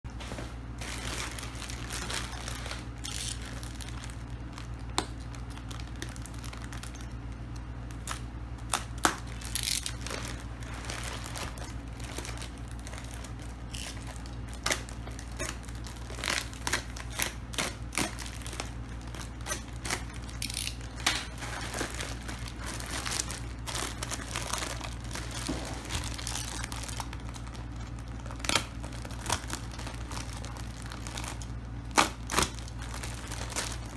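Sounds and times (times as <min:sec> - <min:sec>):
crinkling plastic wrap and cardboard: 0:00.1 - 0:33.9
steady low hum: 0:00.1 - 0:33.9.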